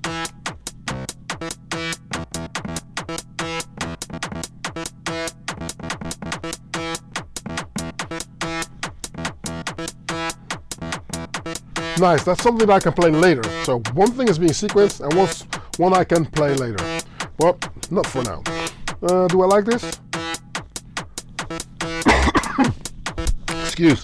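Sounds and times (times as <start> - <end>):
closed hi-hat ticks: 0.0 - 22.1
repeating synth riff: 1.4 - 22.6.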